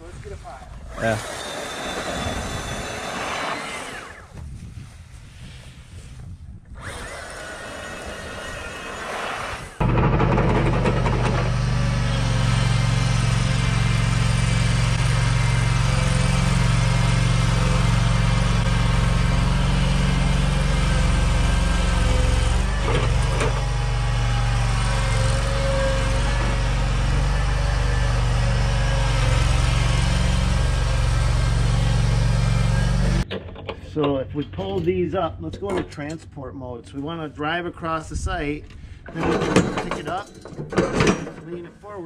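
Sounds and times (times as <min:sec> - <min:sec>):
mower engine running: 0:06.8 - 0:33.2.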